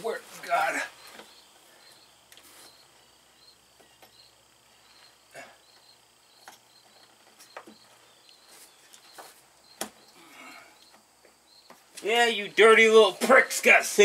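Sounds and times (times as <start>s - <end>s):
crickets chirping: 0.0s - 14.0s.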